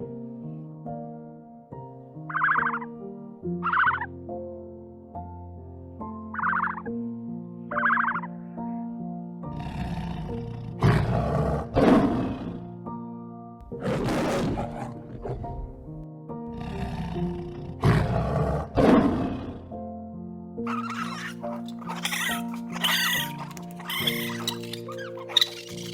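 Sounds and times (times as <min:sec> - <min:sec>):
background music: 0:00.0 - 0:25.9
large animal roaring: 0:09.5 - 0:12.7, 0:13.6 - 0:19.7.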